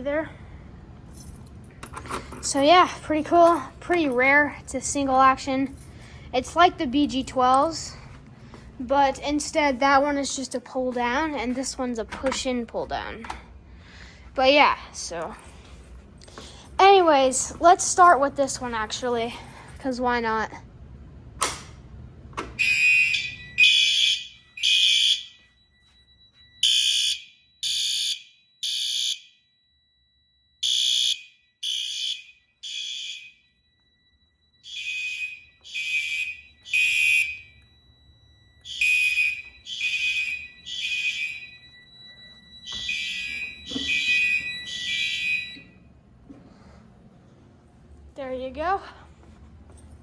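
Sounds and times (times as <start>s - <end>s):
fire alarm horn blasts: 22.4s - 46.1s
thin steady high tone: 33.3s - 45.8s.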